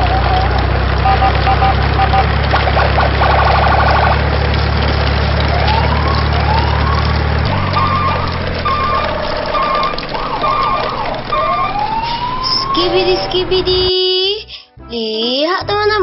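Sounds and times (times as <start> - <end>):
two-tone hi-lo siren: 0.0 - 4.2, 5.4 - 13.8
rising siren wails: 0.0 - 14.0
low engine rumble: 0.0 - 16.0.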